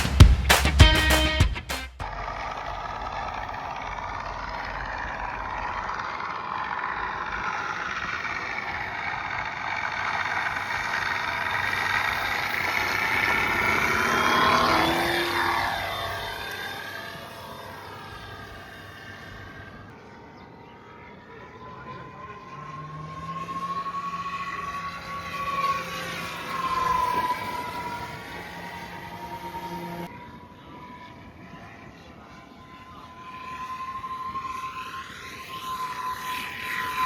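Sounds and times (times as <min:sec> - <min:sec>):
high whistle: 0:22.0 - 0:30.1, 0:30.9 - 0:37.0.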